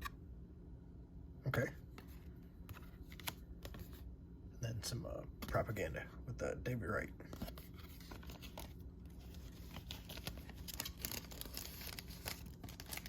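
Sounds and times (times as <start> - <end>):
steady low hum: 0.0 - 13.0
cards and packaging rustling: 2.0 - 4.0, 7.3 - 13.0.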